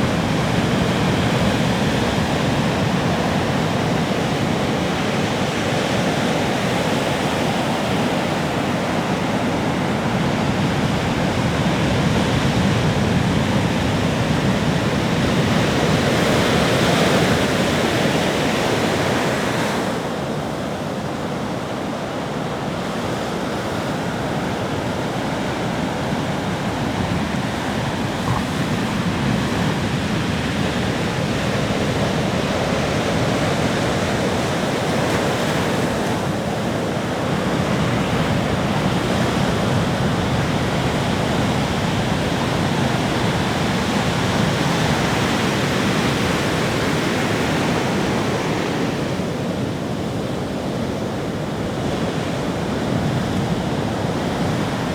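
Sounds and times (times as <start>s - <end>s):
ocean surf breaking: 23.5s - 54.9s.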